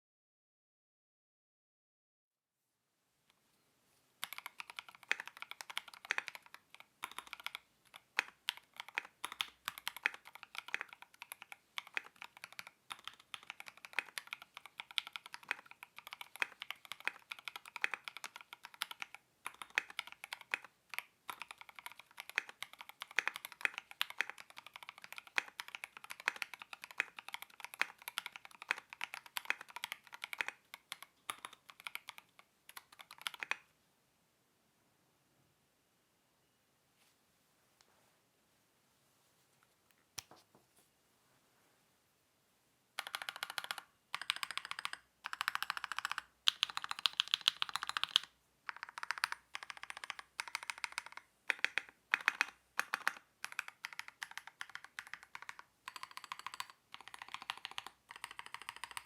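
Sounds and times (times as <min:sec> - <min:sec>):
fast mechanical keyboard typing: 0:04.2 - 0:33.6, 0:43.0 - 0:59.0.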